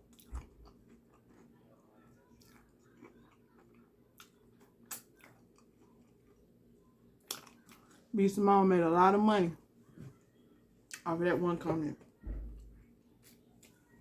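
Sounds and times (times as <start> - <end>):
chewing and wet mouth sounds: 0.0 - 6.6, 7.2 - 8.1.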